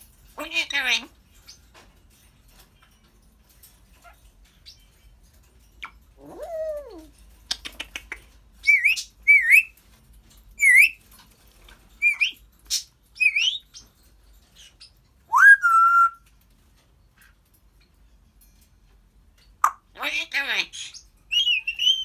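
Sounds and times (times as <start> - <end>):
parrot whistling: 15.3 - 16.2.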